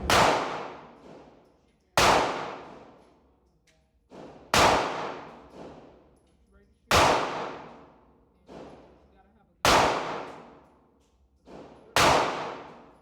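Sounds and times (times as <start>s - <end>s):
gunshots: 0.0s - 1.4s, 2.0s - 2.9s, 4.1s - 5.9s, 6.9s - 7.9s, 9.6s - 10.6s, 11.5s - 13.0s.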